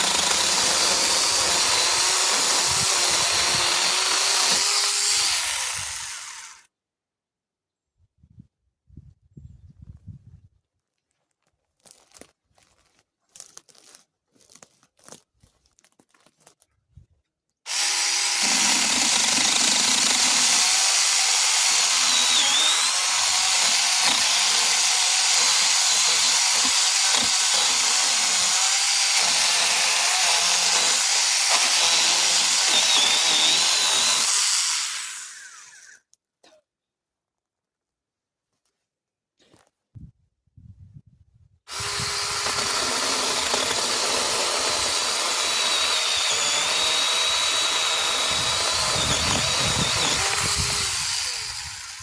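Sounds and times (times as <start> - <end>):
power cutting tool running: 0.0 - 6.6, 17.7 - 36.0, 41.7 - 52.0.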